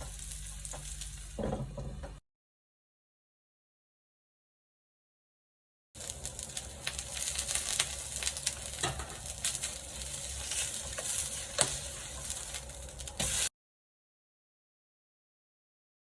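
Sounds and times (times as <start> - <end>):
food sizzling in a pan: 0.0 - 1.4, 6.0 - 13.5
utensil scraping a pan: 7.0 - 13.5.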